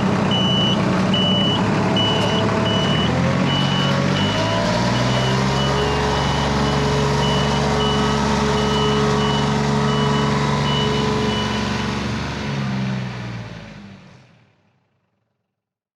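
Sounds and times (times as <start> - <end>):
heavy vehicle engine running: 0.0 - 15.3
reversing alarm beeping: 0.3 - 12.0.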